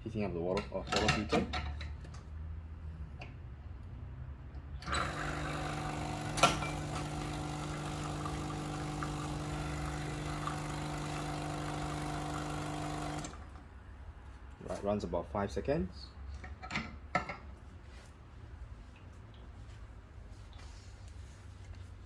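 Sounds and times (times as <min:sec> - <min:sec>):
espresso machine pump humming: 0:04.8 - 0:13.5.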